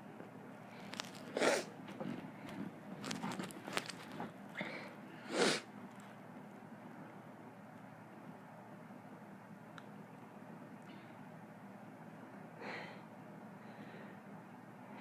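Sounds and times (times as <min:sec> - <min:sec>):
rustling: 0:00.6 - 0:04.4.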